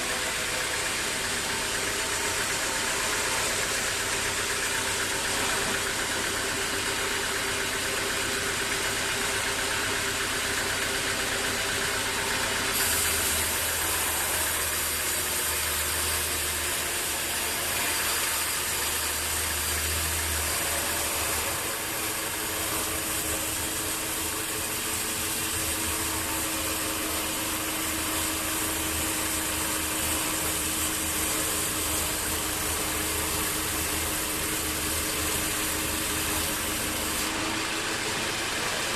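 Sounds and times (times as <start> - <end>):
sawmill machinery running: 0.0 - 38.9
bright hiss: 12.7 - 38.1.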